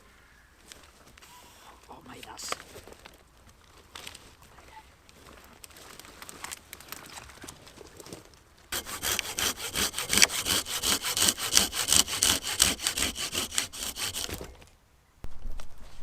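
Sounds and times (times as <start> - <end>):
hand saw cutting wood: 8.8 - 14.6.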